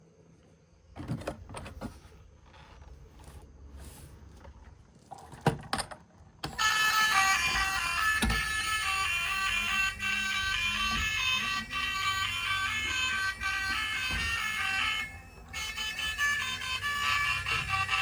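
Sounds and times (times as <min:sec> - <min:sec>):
music: 0:06.5 - 0:18.0.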